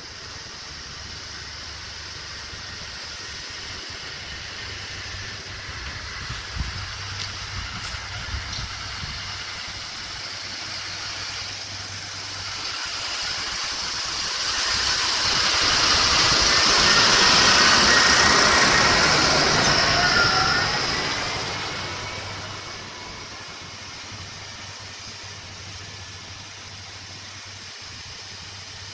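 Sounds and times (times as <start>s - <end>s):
motor vehicle driving past: 15.0s - 24.3s.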